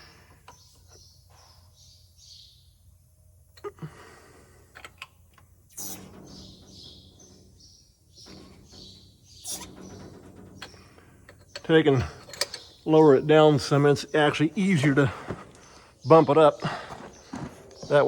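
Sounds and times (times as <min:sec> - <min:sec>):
birds chirping: 0:00.0 - 0:18.0
air jack valve hissing: 0:05.6 - 0:13.8.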